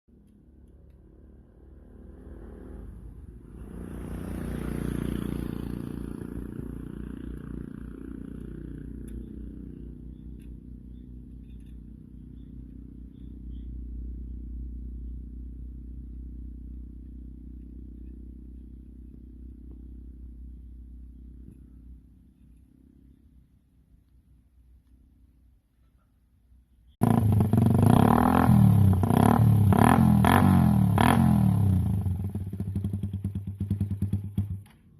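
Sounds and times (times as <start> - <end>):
vehicle engine revving and idling: 0.8 - 20.7, 27.0 - 34.8.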